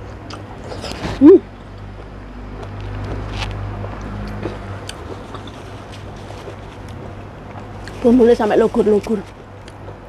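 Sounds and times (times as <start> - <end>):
chewing and mouth clicks: 2.5 - 8.1.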